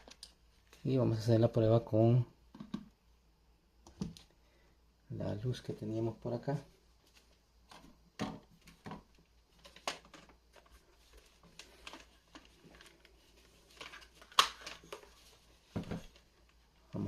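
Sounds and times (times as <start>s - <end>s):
plastic clicks and knocks: 2.5s - 2.9s.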